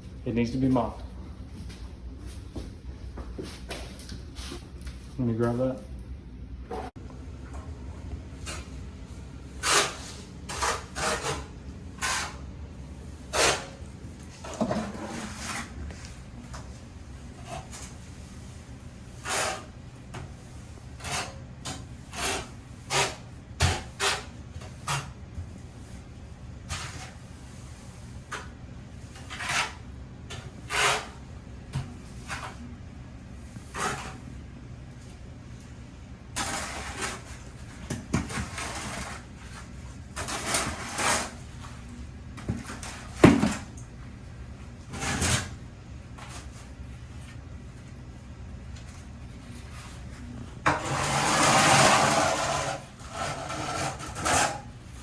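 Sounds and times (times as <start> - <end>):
tiles scraping: 13.2 - 16.7, 33.4 - 34.3, 36.4 - 43.8, 49.2 - 55.0.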